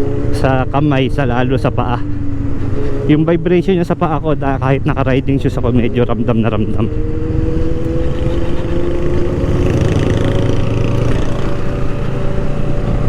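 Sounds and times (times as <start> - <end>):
wind and road noise: 0.0 - 13.0
motorcycle engine cruising: 5.8 - 13.0.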